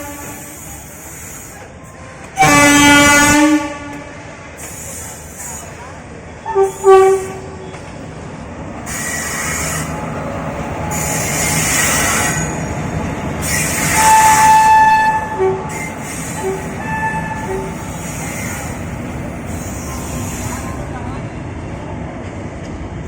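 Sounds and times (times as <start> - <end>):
train horn blasts: 0.0 - 0.7, 2.3 - 4.2, 6.4 - 7.6, 13.8 - 18.6
train running rumble: 0.0 - 23.0.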